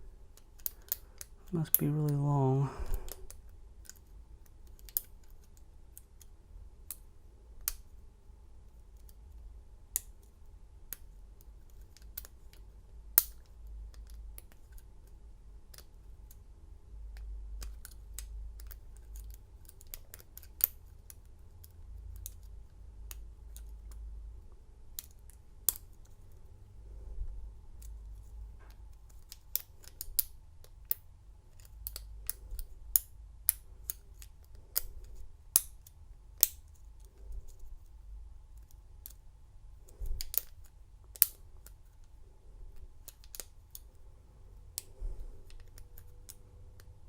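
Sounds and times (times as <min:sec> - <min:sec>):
lock pick clicking and scraping: 0:00.4 - 0:01.3, 0:27.8 - 0:37.6, 0:39.9 - 0:42.0.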